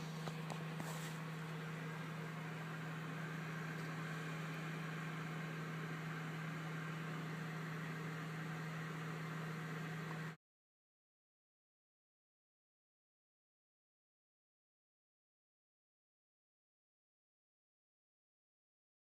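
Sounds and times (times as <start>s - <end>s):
low machine hum with hiss: 0.0s - 10.4s.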